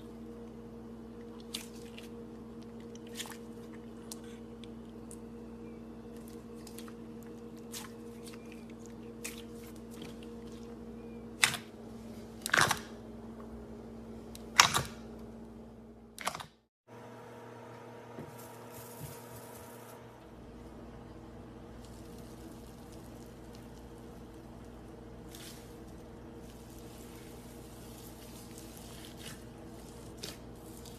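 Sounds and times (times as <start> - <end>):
low electrical hum: 0.0 - 30.9.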